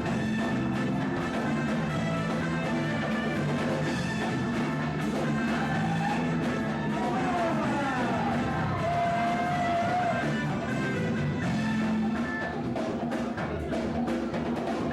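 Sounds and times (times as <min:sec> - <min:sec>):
drums: 0:00.0 - 0:14.9.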